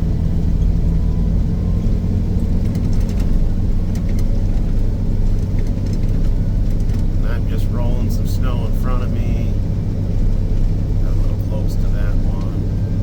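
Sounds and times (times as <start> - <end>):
diesel engine drone: 0.0 - 13.0.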